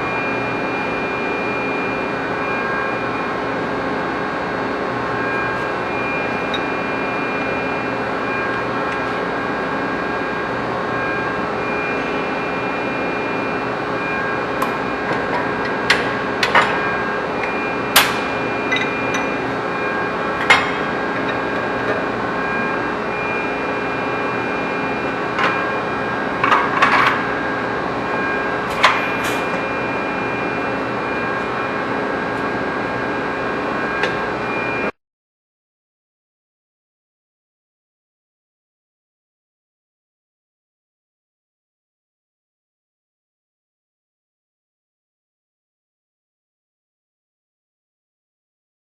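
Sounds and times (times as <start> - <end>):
machinery humming and whining: 0.0 - 35.0.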